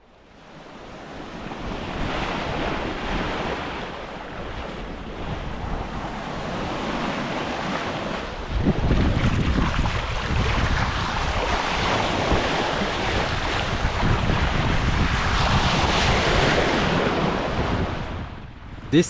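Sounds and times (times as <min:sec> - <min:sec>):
wind buffeting microphone: 0:08.3 - 0:19.0.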